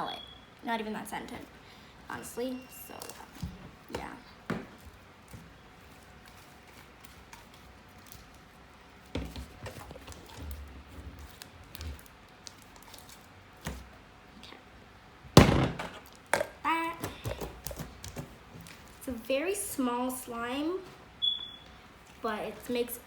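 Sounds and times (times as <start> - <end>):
slime squishing: 1.2 - 14.7, 16.0 - 23.0
loud thump: 15.4 - 16.0.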